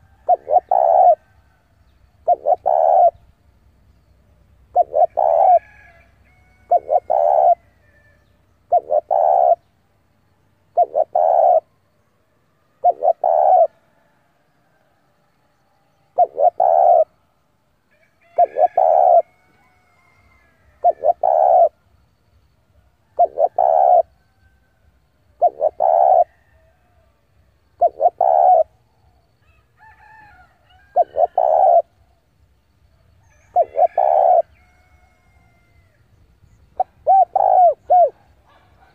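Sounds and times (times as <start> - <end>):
dove cooing: 0.0 - 1.4, 2.2 - 3.3, 4.6 - 6.0, 6.6 - 8.0, 8.6 - 9.6, 10.7 - 11.7, 12.8 - 13.8, 16.1 - 17.2, 18.3 - 19.3, 20.1 - 21.8, 23.0 - 24.2, 25.3 - 26.8, 27.7 - 28.8, 30.8 - 32.0, 33.3 - 34.8, 36.6 - 38.9.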